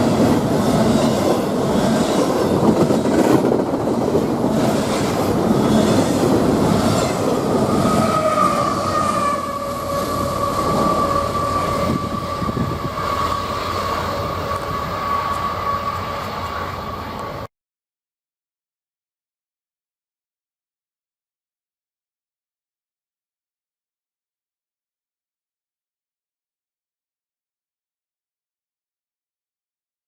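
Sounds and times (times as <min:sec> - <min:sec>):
train rumble and wheel clatter: 0:00.0 - 0:17.5
high-pitched wheel squeal: 0:06.8 - 0:17.2.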